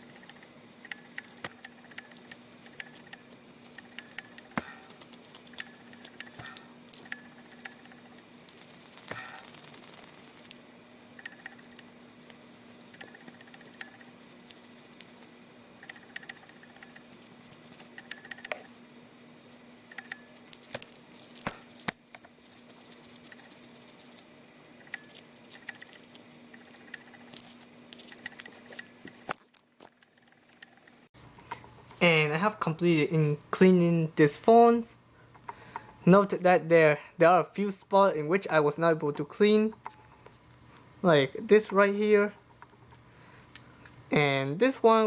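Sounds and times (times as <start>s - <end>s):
hands cleaning plastic phone: 0.0s - 10.6s, 11.2s - 18.6s, 19.4s - 30.9s
faint steady low hum: 0.0s - 45.0s.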